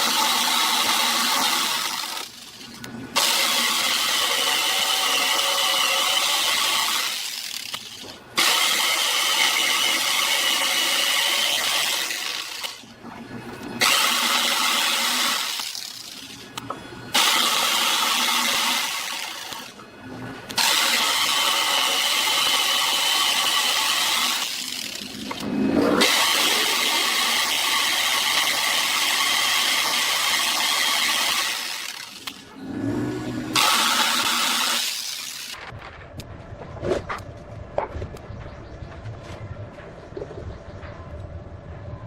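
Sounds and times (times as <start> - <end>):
electric power drill whining: 0.0 - 19.8, 20.5 - 35.7.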